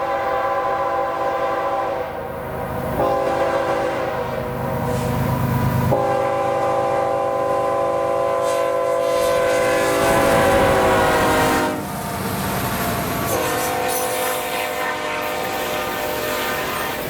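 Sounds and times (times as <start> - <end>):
locomotive air horn chord: 0.0 - 2.2, 3.0 - 5.1, 5.9 - 11.9, 13.3 - 17.0
train rumble: 0.0 - 17.0.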